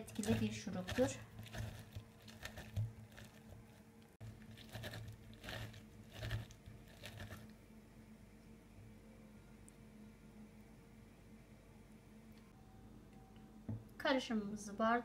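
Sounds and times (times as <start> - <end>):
lemon squeezer squishing and crunching: 0.0 - 7.5
faint steady hum: 0.0 - 15.0.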